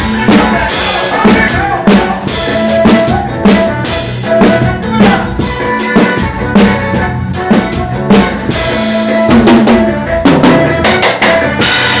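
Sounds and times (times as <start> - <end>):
drum kit rhythm: 0.0 - 12.0
live band music: 0.0 - 12.0
steady bass: 0.0 - 12.0
cymbal crash: 11.6 - 12.0.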